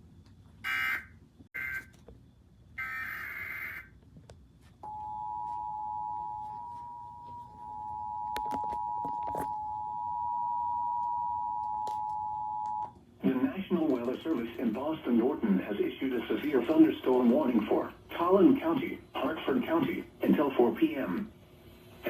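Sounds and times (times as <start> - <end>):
two-tone alarm signal: 0.7 - 1.9, 4.8 - 12.9.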